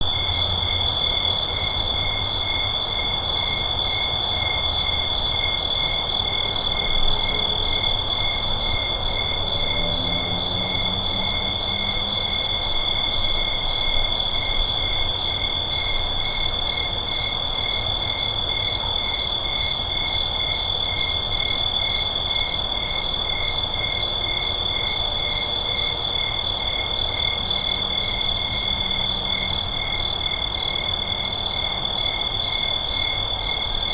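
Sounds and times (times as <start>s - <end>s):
crickets trilling: 0.0s - 33.9s.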